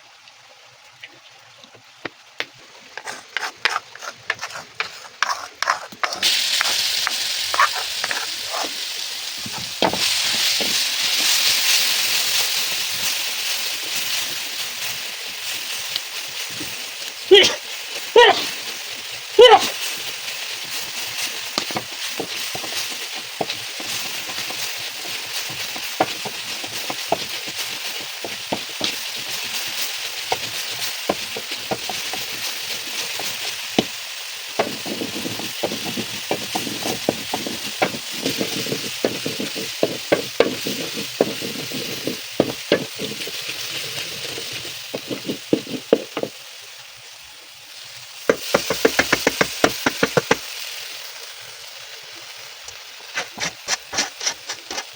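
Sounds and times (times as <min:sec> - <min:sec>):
food sizzling in oil: 0:00.0 - 0:54.9
metal spatula scraping a pan: 0:03.0 - 0:06.9, 0:34.6 - 0:46.3.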